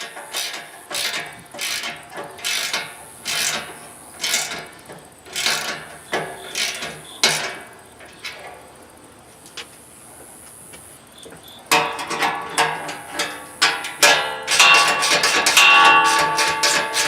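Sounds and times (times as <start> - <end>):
ratchet wrench ratcheting: 0.0 - 7.6.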